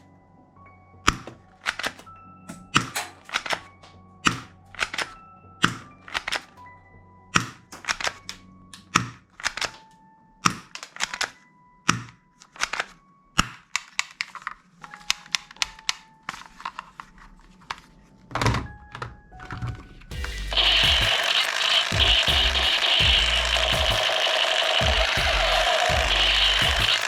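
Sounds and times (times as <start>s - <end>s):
toy gun mechanisms clicking: 21.1s - 27.0s.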